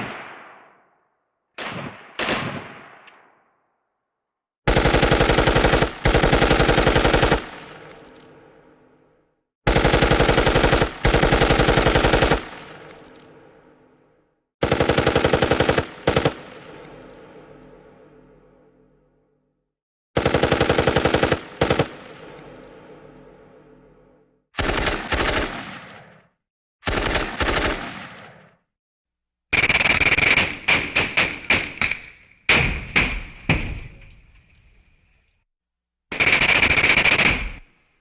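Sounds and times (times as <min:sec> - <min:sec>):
single gunshots: 0:00.0 - 0:00.8, 0:01.6 - 0:03.4, 0:29.6 - 0:35.2, 0:36.1 - 0:37.8
machine gun bursts: 0:29.6 - 0:35.0, 0:36.1 - 0:37.7.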